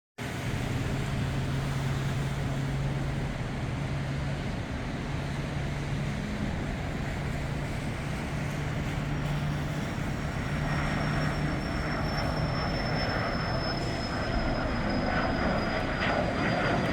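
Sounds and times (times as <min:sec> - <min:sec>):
jet engines rushing: 0:00.3 - 0:16.9
thin high whine: 0:09.3 - 0:16.9.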